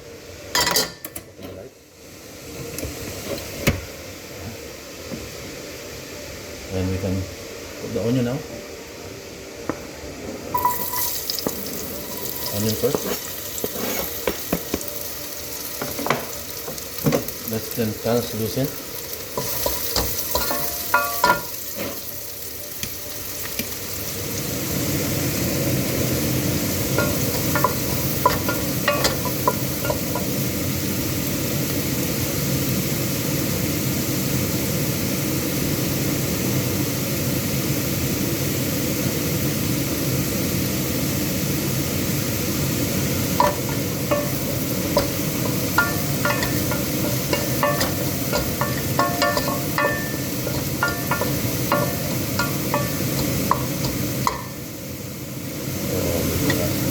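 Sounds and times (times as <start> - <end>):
onion sizzling in hot oil: 1.8 - 9.4, 10.5 - 56.9.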